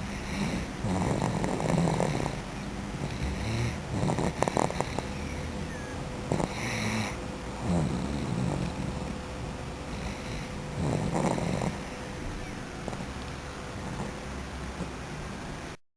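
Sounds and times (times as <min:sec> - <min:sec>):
person snoring: 0:00.0 - 0:02.4, 0:03.0 - 0:05.1, 0:06.3 - 0:09.2, 0:09.9 - 0:11.9.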